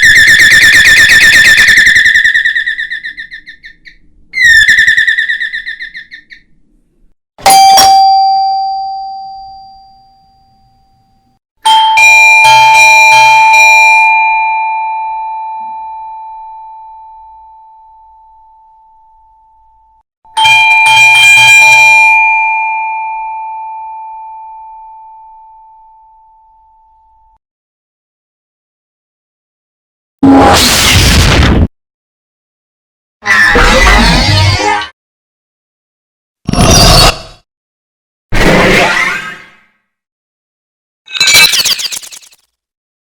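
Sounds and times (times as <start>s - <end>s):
struck chime ringing: 7.4s - 11.2s
electronic doorbell trilling: 7.4s - 11.4s, 20.4s - 22.6s
two-tone doorbell chime: 7.4s - 19.7s, 20.3s - 27.2s.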